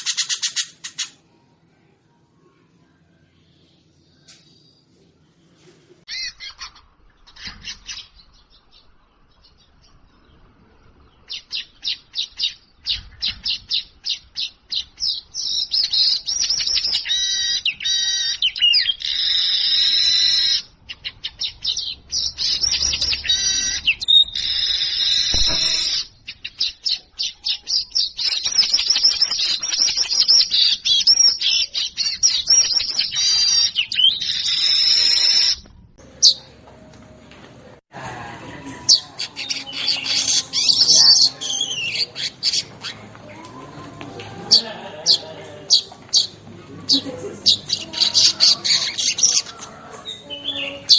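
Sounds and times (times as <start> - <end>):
bird chirping and chattering song: 0.0 - 1.2, 6.1 - 35.6, 38.9 - 43.1, 45.1 - 50.9.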